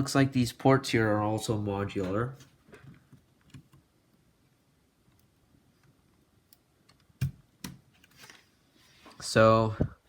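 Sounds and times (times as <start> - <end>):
laptop parts clicking and knocking: 6.6 - 8.1.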